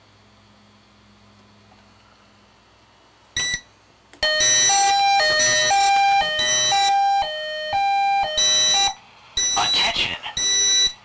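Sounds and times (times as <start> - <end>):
two-pitch alarm tone: 3.4 - 11.0.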